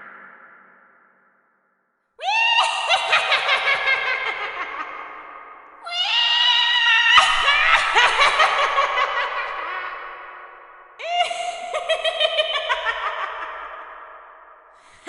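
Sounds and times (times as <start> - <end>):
high-pitched cackling laugh: 2.4 - 6.1, 7.1 - 14.0.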